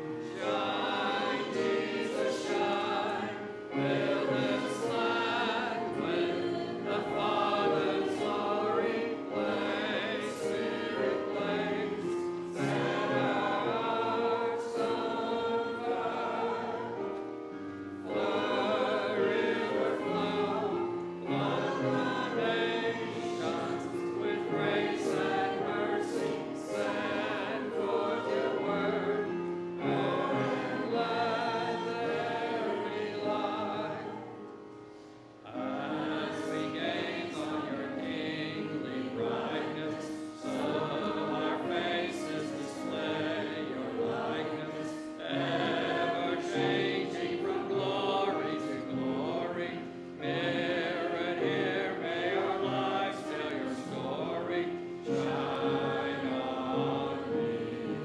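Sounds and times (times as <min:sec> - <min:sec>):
group singing a hymn: 0:00.0 - 0:58.0.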